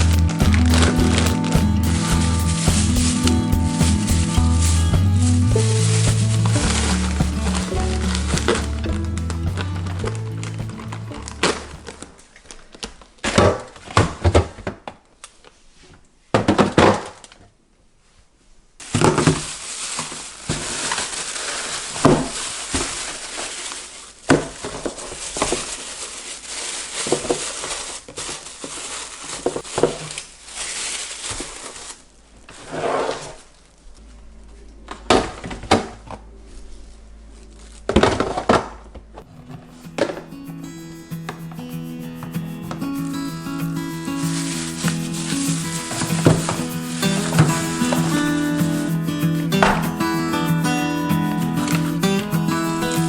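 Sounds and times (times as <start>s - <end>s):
packaging crinkling: 19.1s - 32.7s, 39.4s - 49.8s
steady hiss: 39.3s - 53.0s.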